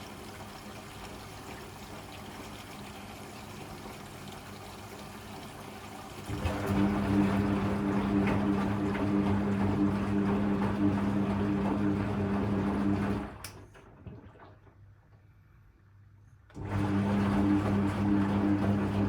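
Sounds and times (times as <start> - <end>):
washing machine motor humming: 0.0 - 15.0, 16.5 - 19.0
water sloshing in drum: 13.7 - 15.1.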